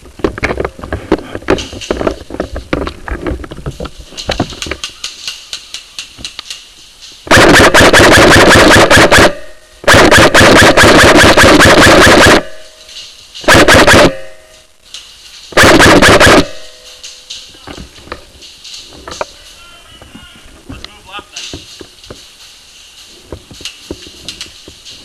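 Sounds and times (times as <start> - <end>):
gear handling ticks and knocks: 0.0 - 7.2, 16.8 - 25.0
airsoft gun full-auto bursts: 7.3 - 12.6, 13.4 - 14.3, 15.6 - 16.7.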